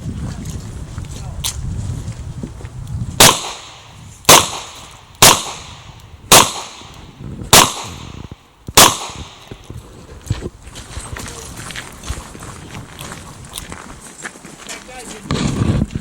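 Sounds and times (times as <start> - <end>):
revolver shots with echo: 3.2 - 8.2, 8.8 - 9.5.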